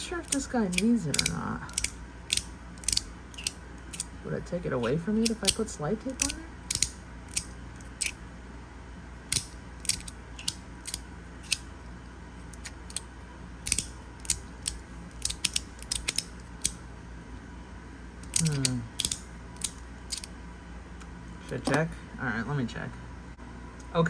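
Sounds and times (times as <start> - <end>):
magnets snapping clicks: 0.2 - 4.1, 6.2 - 8.2, 9.3 - 11.7, 12.5 - 16.8, 18.2 - 20.3.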